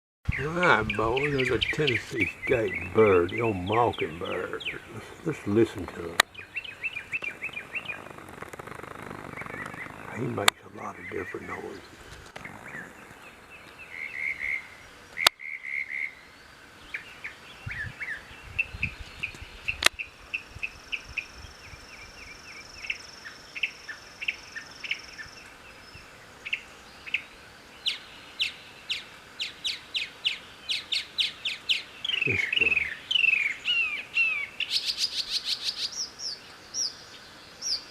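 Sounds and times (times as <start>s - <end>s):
steady high buzz: 0.3s - 15.3s
bird singing varied phrases: 0.3s - 37.9s
sharp clicks: 7.2s - 10.6s.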